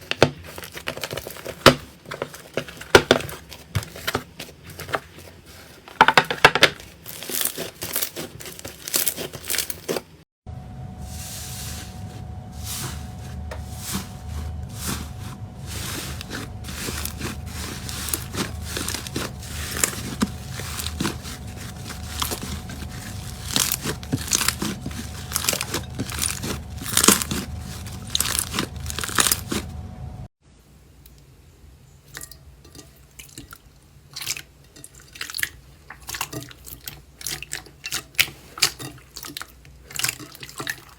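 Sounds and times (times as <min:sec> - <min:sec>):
slime crunching and crackling: 0:00.0 - 0:06.0, 0:06.8 - 0:10.2, 0:12.6 - 0:29.8.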